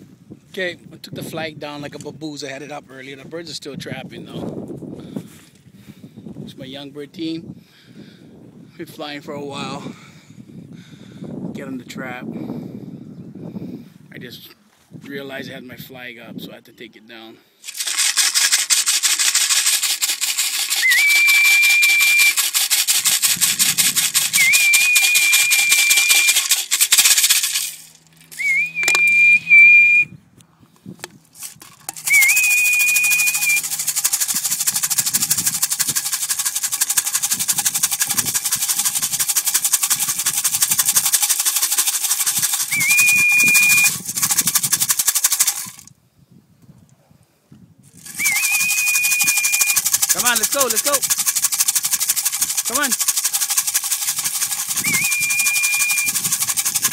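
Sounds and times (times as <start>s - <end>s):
grain rattling in a can: 17.6s - 29.2s, 31.3s - 45.9s, 47.9s - 56.9s
short whistles: 20.8s - 22.4s, 24.3s - 26.5s, 28.3s - 30.2s, 32.0s - 33.7s, 42.7s - 44.0s, 48.1s - 49.8s, 54.7s - 56.2s.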